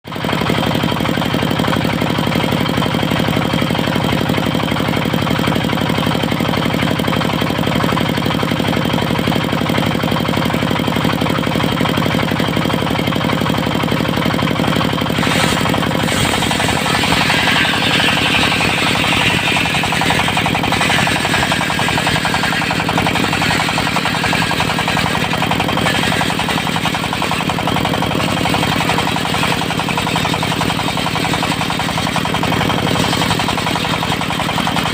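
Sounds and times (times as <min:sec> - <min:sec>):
diesel engine knocking: 0:00.1 - 0:34.9
saw blade cutting wood: 0:13.5 - 0:34.9.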